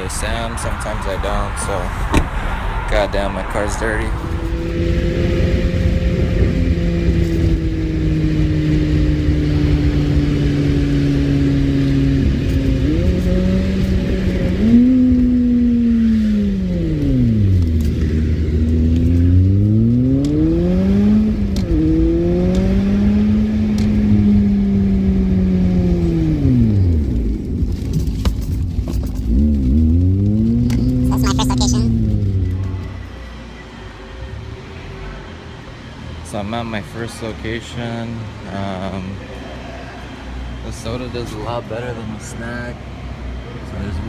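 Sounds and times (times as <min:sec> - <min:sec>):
car engine from inside cabin: 0:04.1 - 0:33.1.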